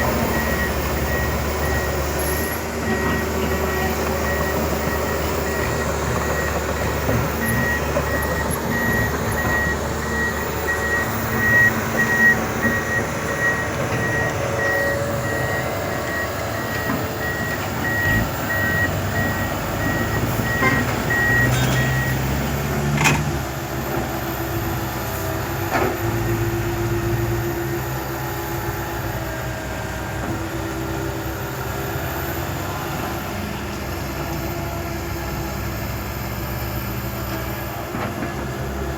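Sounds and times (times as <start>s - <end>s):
reversing alarm beeping: 0.0s - 22.8s
heavy diesel machinery running: 0.0s - 38.9s.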